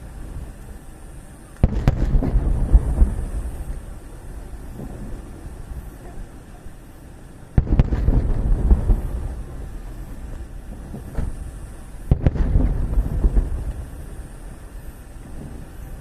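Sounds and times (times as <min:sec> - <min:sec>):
firework crack: 0:00.0 - 0:16.0
low rolling rumble: 0:00.0 - 0:16.0
firework shells booming: 0:01.6 - 0:06.8, 0:07.4 - 0:16.0.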